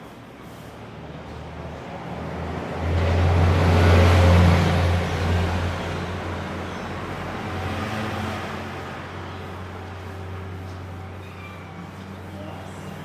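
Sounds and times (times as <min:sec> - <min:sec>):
vehicle passing: 0:01.9 - 0:10.7.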